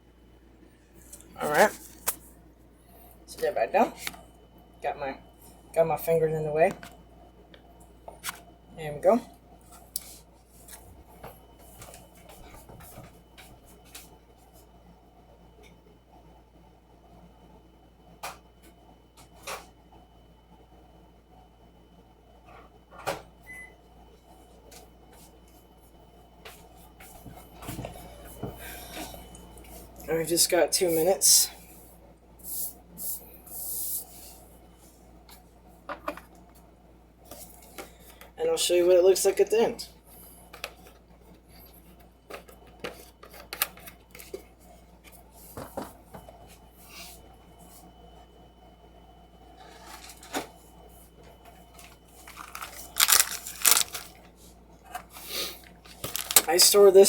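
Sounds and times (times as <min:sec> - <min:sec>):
microwave keypad beep: 0:23.4 - 0:23.8.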